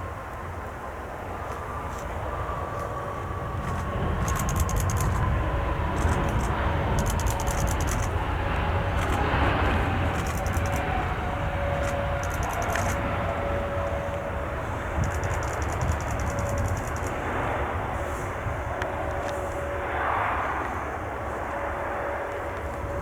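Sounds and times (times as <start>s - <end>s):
jet airliner engines rumbling: 0.0s - 23.0s
falling engine whine: 0.1s - 23.0s
rapid high clicking: 4.2s - 8.2s, 10.1s - 10.9s, 11.8s - 13.1s, 14.9s - 17.2s.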